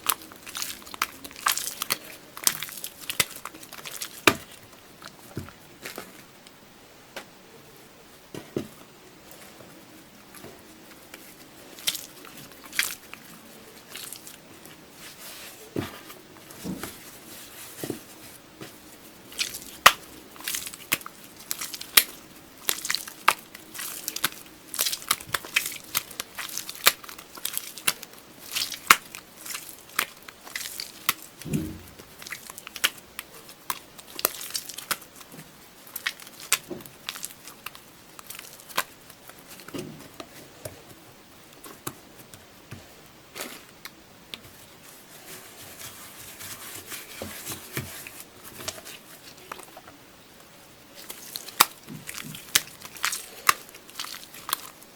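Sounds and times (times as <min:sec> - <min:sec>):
slime clicking and crackling: 0:00.0 - 0:06.2, 0:10.3 - 0:15.4, 0:19.2 - 0:40.4, 0:50.9 - 0:54.9
slime squelching: 0:00.0 - 0:06.3, 0:09.2 - 0:54.9.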